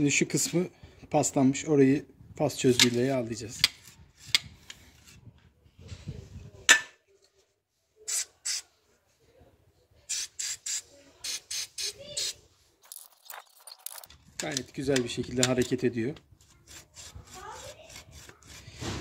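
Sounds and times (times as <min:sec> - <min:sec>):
aerosol can spraying: 0:10.1 - 0:12.4.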